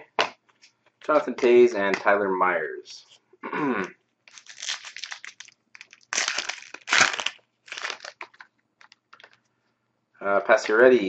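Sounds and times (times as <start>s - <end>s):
plastic wrapper crinkling and tearing: 4.2s - 9.5s.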